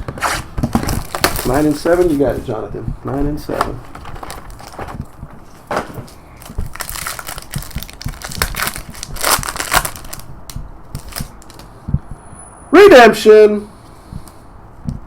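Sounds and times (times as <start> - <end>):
plastic wrapping crinkling: 0.6 - 2.4, 3.5 - 11.7
packaging being torn open: 0.8 - 1.8, 6.4 - 10.3, 11.0 - 11.7.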